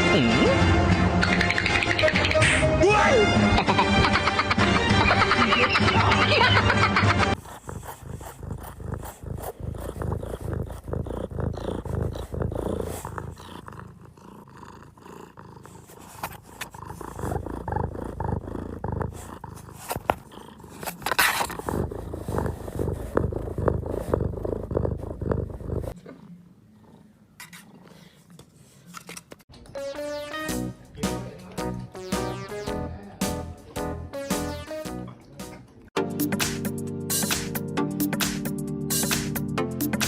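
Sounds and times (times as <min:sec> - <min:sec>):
pet animal purring rumble: 0:07.3 - 0:28.2.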